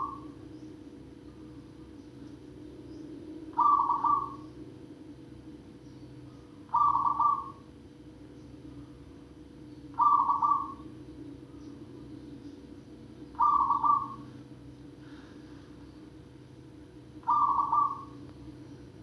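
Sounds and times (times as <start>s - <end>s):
dove cooing: 0.0s - 0.5s, 2.7s - 4.7s, 6.7s - 7.7s, 9.9s - 12.1s, 13.3s - 14.5s, 17.2s - 18.5s
steady low hum: 0.0s - 19.0s.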